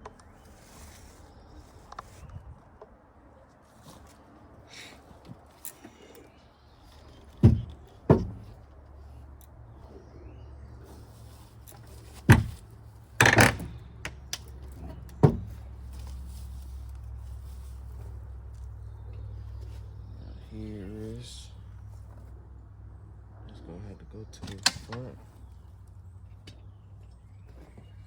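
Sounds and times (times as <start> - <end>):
sharp knocks and bangs: 7.4 - 8.6.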